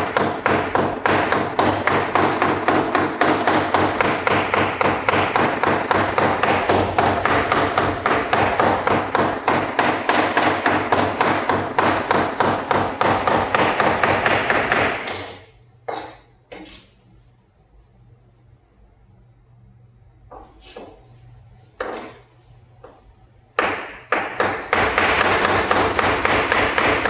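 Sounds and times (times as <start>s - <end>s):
knife chopping on a block: 0.0s - 16.2s, 21.8s - 22.2s, 23.6s - 27.0s.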